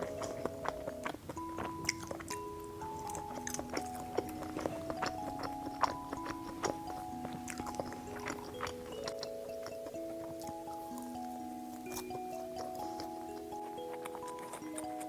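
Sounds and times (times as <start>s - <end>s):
background music of held notes: 0.0s - 15.0s
person chewing crunchy food: 0.0s - 15.0s.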